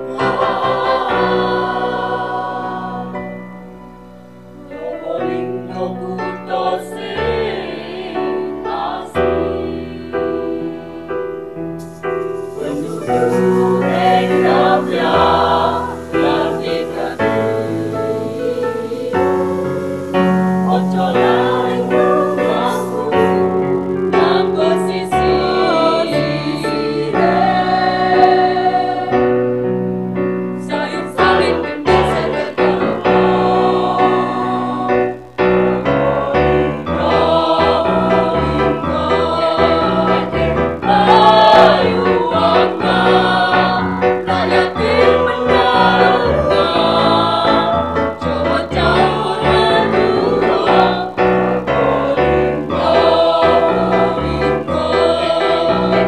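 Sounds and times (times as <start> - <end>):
children's choir singing: 0.0 - 3.8, 4.5 - 29.6, 30.6 - 56.0
keyboard accompaniment: 0.0 - 56.0.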